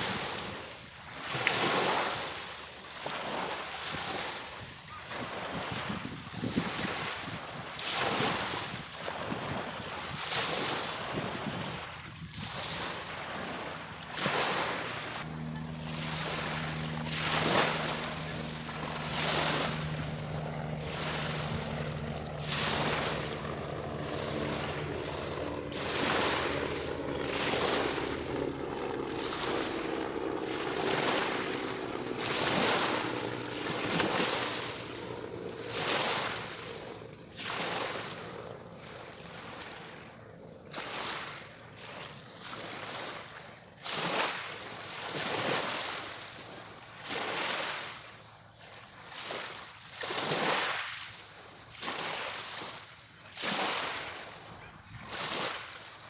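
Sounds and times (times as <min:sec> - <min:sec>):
steady low hum: 0:13.0 - 0:37.4.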